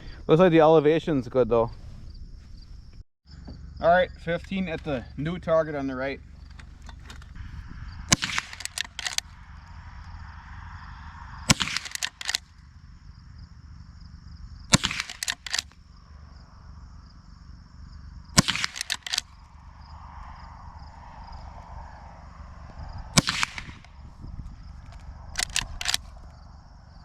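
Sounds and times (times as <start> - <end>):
rifle shots: 8.0 - 9.4, 11.4 - 12.5, 14.7 - 15.8, 18.3 - 19.4, 23.1 - 24.1, 24.8 - 26.2
rifle lever clicks: 8.1 - 9.3, 11.6 - 12.4, 14.7 - 15.8, 18.4 - 19.3, 24.8 - 26.2.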